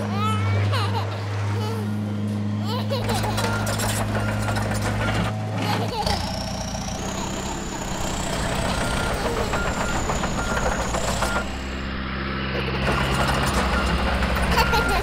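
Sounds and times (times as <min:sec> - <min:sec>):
truck engine running: 0:00.0 - 0:15.0.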